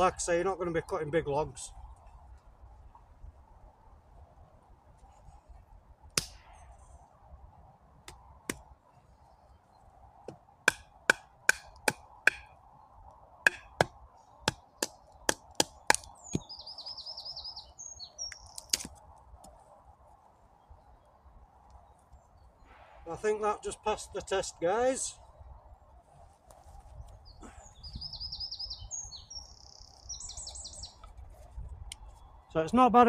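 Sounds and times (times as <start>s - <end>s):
hatchet chopping wood: 6.2s - 6.4s, 8.0s - 8.7s, 10.2s - 12.6s, 13.4s - 16.5s, 18.7s - 18.9s
bird trilling song: 12.2s - 18.8s, 26.9s - 31.2s.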